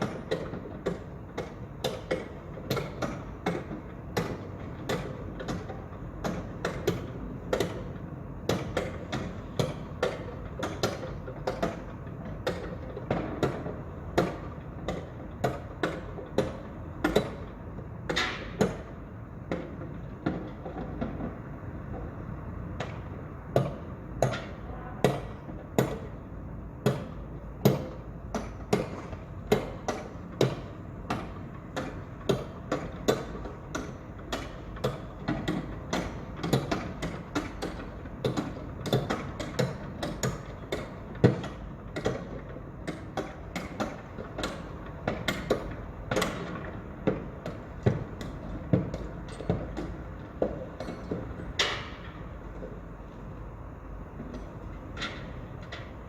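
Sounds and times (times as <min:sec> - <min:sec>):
sharp knocks and taps: 0:26.8 - 0:52.8.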